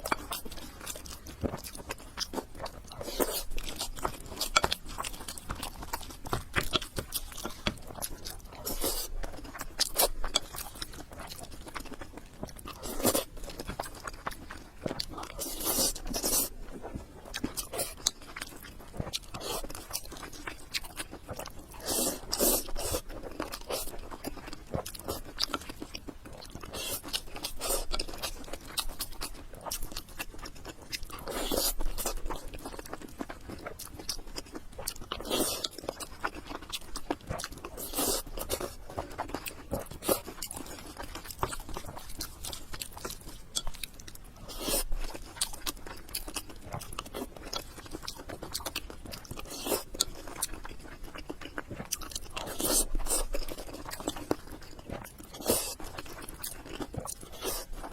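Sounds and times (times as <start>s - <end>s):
mouth chewing and crunching: 0.0s - 57.9s.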